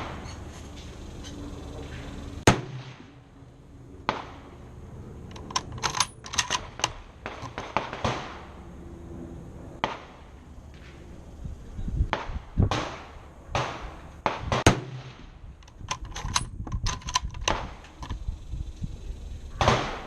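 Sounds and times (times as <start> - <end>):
rifle bang: 2.4 - 3.2, 12.1 - 15.4, 19.6 - 20.0
metallic clicks and clinks: 5.3 - 7.6, 15.6 - 18.3.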